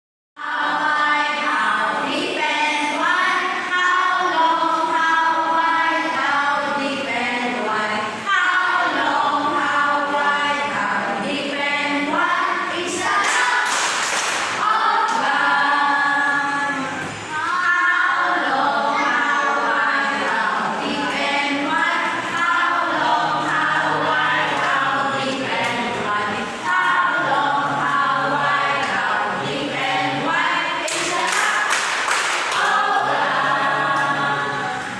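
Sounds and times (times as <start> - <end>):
amplified karaoke singing: 14.5 - 34.9.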